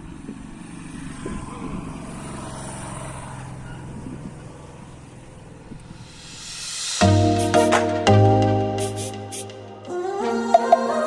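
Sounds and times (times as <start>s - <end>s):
rising hiss: 5.7s - 9.9s.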